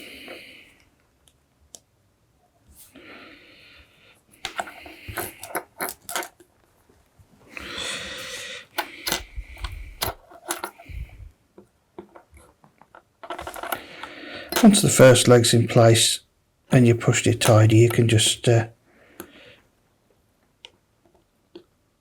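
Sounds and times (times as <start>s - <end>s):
tools clicking and tapping: 4.4s - 6.4s, 8.2s - 10.8s, 12.9s - 14.9s.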